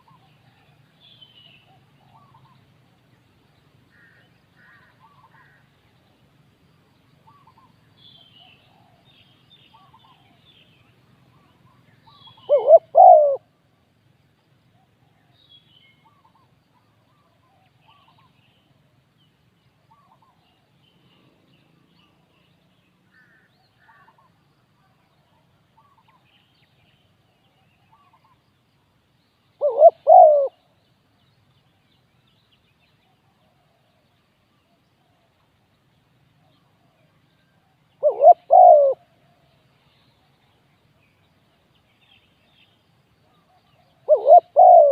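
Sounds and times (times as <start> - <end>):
small birds chirping: 0.0 - 6.2, 7.0 - 13.4, 25.0 - 44.9
dove cooing: 12.4 - 13.4, 29.6 - 30.6, 38.0 - 39.0, 43.4 - 44.9.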